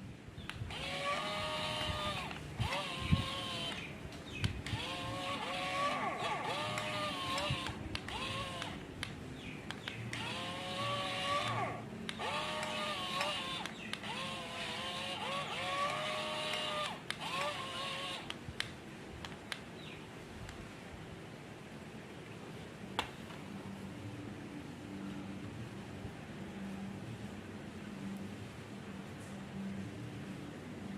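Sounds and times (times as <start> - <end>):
excavator engine running: 0.7 - 8.9, 10.1 - 18.3
hydraulics whining: 0.7 - 8.9, 10.1 - 18.3.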